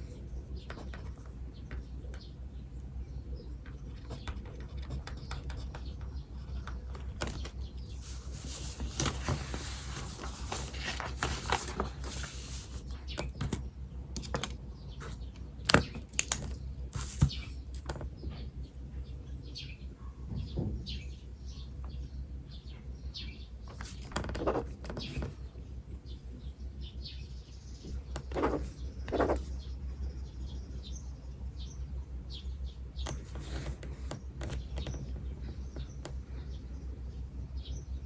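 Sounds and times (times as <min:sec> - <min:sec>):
small birds chirping: 0:00.0 - 0:38.0
steady low hum: 0:00.0 - 0:38.0
pen scratching on paper: 0:03.8 - 0:13.4, 0:23.7 - 0:25.3, 0:28.0 - 0:29.6, 0:33.1 - 0:34.8
loud scratches or rustles: 0:07.2 - 0:13.0.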